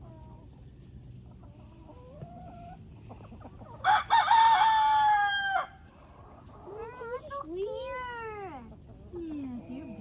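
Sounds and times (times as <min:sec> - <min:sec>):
hens clucking softly: 0:00.0 - 0:04.2
rooster crowing: 0:03.8 - 0:05.8.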